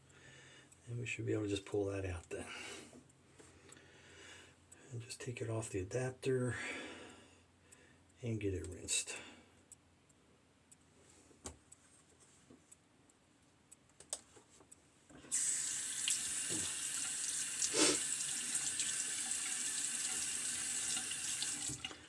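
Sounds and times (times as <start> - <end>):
sink faucet running: 15.3 - 22.0
clunk in running water: 16.0 - 18.8.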